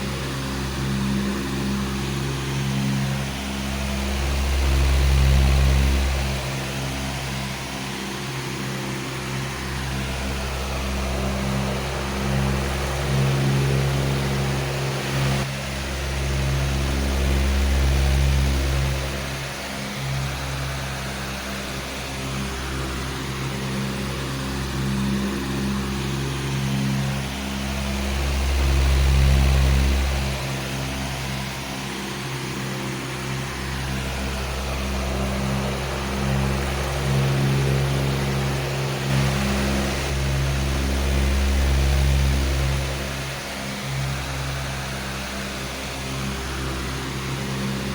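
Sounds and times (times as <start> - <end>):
electric fan running: 0.0 - 47.9.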